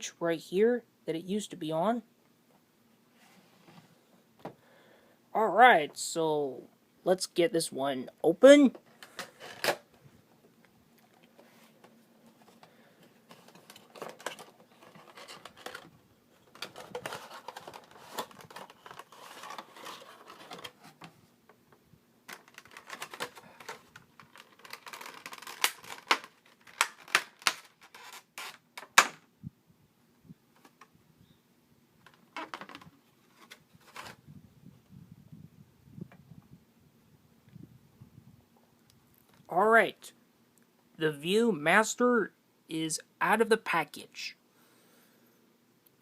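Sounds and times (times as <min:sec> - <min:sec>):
packaging rustling and clicking: 0:11.0 - 0:21.2, 0:22.3 - 0:29.2.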